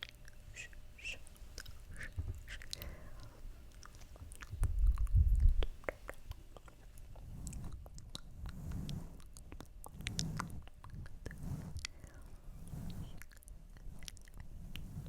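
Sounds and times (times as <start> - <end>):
wet mouth clicks and lip smacks: 0.0 - 7.2
low muffled rumble: 1.6 - 15.0.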